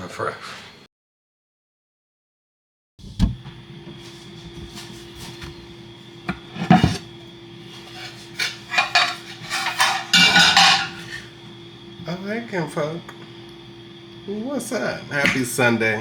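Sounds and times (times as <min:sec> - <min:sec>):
steady hum: 0:03.1 - 0:16.0
pots and dishes clattering: 0:06.4 - 0:11.4.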